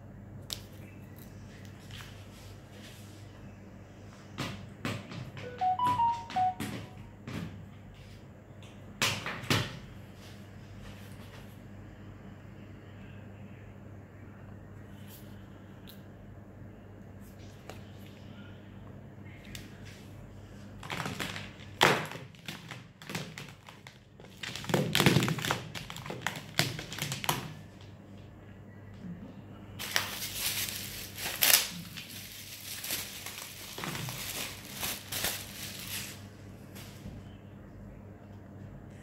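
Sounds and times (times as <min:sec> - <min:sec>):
packaging rustling and crinkling: 0:20.8 - 0:27.6, 0:29.8 - 0:36.3.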